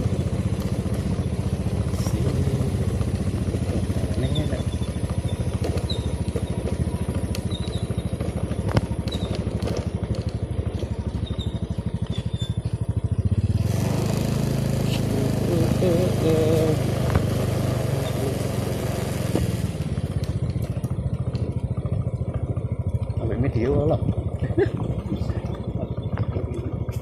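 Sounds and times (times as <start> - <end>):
motorcycle engine running: 0.0 - 27.0.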